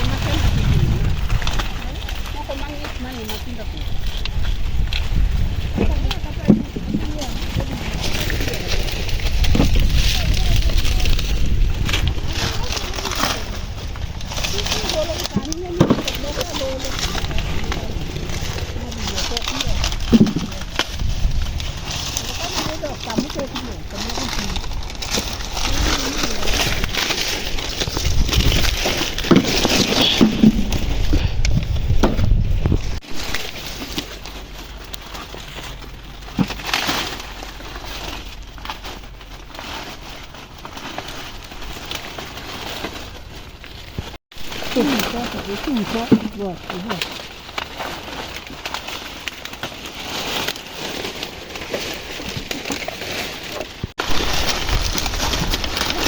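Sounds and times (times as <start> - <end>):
low rumble: 0.0 - 36.6, 54.0 - 56.0
dry maize stalks rustling: 0.0 - 56.0.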